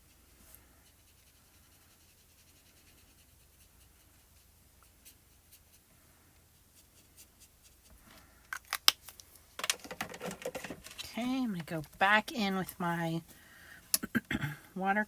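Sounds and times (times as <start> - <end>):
marker scratching on paper: 0.8 - 5.9.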